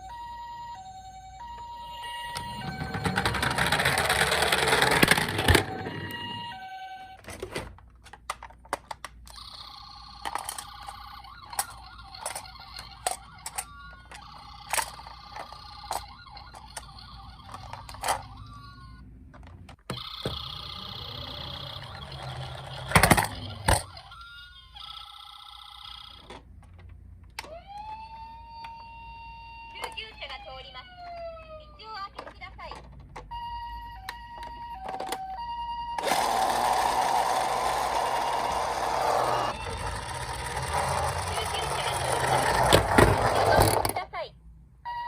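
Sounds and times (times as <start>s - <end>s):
toy electronic siren tones: 0.0s - 7.3s, 9.3s - 19.1s, 19.9s - 26.4s, 27.5s - 31.9s, 33.3s - 43.7s
plastic toy cars clicking together: 2.7s - 5.7s.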